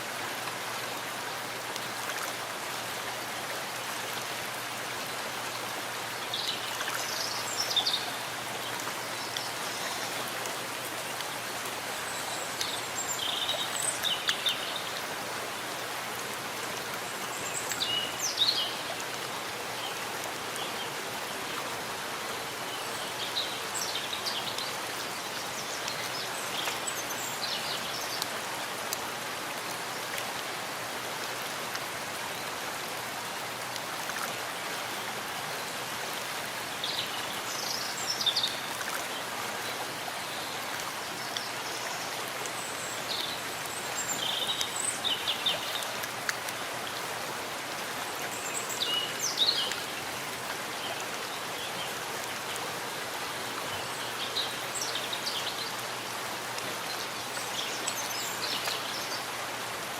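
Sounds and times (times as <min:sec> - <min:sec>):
rain falling in forest: 0:00.0 - 0:59.9.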